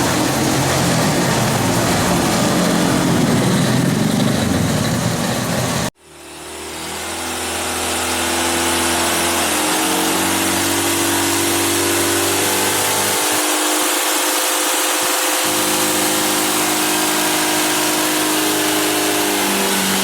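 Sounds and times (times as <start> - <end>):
diesel engine running: 0.0 - 6.0, 15.4 - 20.0.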